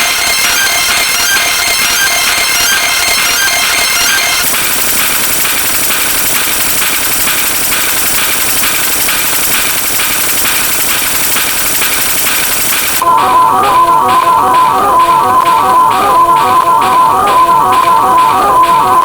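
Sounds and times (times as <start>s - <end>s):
pulsing mechanical engine noise: 0.0s - 13.1s.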